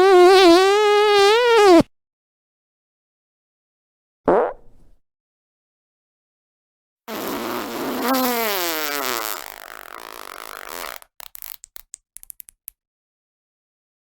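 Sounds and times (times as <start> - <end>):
fart sound effect: 7.1 - 11.6.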